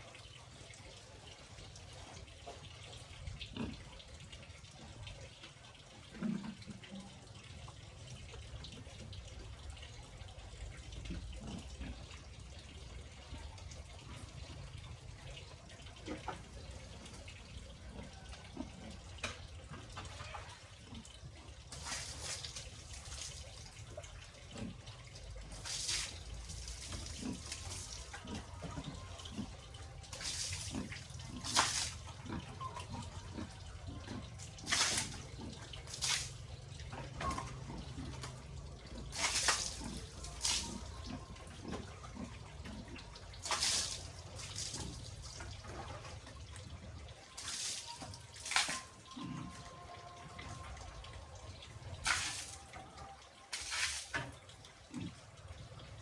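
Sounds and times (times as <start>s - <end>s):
water splashing and pouring: 18.4s - 56.0s.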